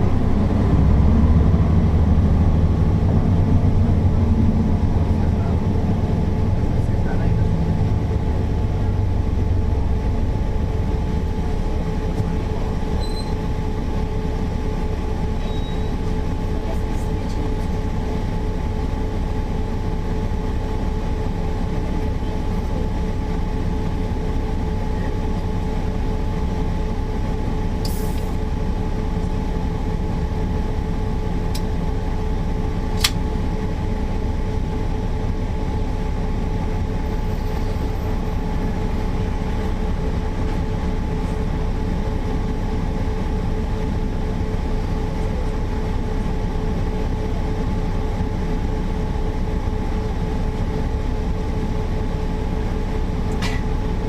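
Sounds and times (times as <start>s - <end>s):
bus diesel engine rumbling: 0.0s - 54.0s
sharp click: 33.0s - 33.2s.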